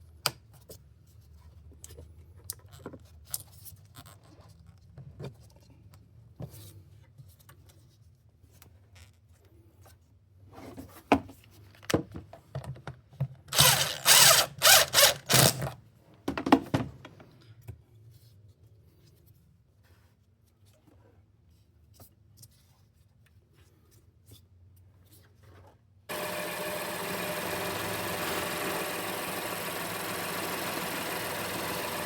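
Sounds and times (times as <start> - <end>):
handheld power tool running: 13.5 - 15.8, 26.1 - 32.0.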